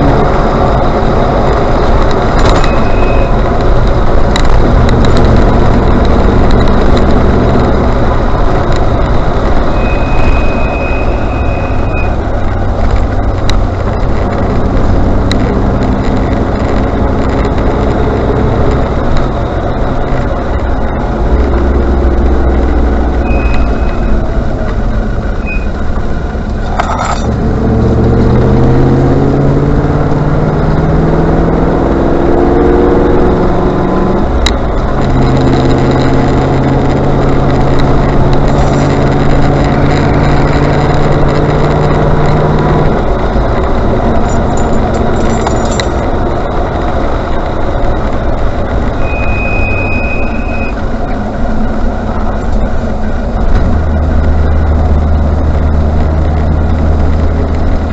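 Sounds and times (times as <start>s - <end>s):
car engine and road noise: 0.0s - 57.9s
brake squeal: 2.2s - 3.8s, 8.9s - 12.8s, 20.8s - 27.4s, 43.4s - 53.4s.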